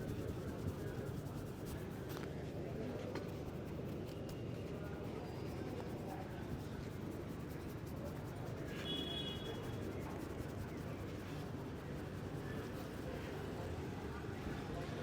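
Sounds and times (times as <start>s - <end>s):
hands rubbing hair and scalp: 0.0s - 2.2s
street background hum: 0.0s - 15.0s.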